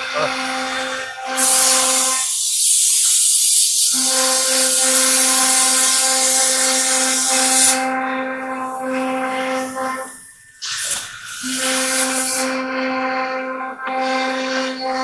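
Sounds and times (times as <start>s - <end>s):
loud hiss: 0.0s - 7.9s, 8.6s - 12.6s
router spindle high whine: 0.0s - 15.0s.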